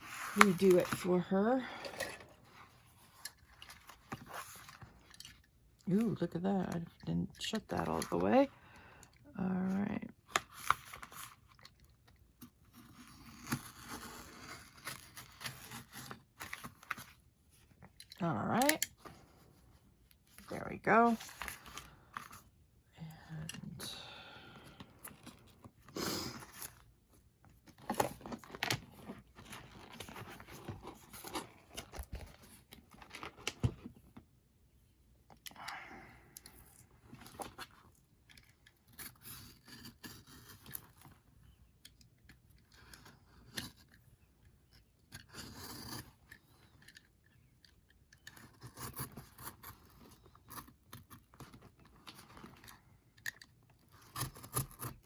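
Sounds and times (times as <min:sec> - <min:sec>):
book pages rustling and crinkling: 0:00.0 - 0:06.0, 0:09.7 - 0:20.5, 0:24.6 - 0:34.4.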